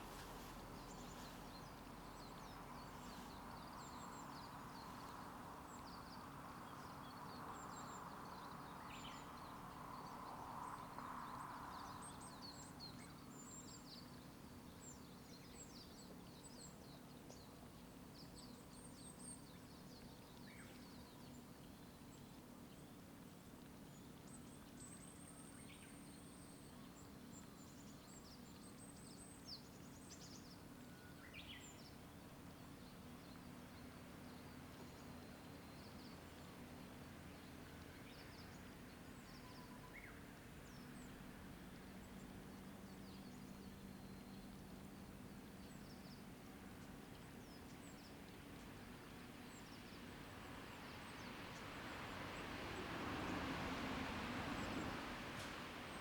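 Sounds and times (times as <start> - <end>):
songbirds chirping and twittering: 0.0 - 56.0
passing road vehicle: 51.0 - 56.0.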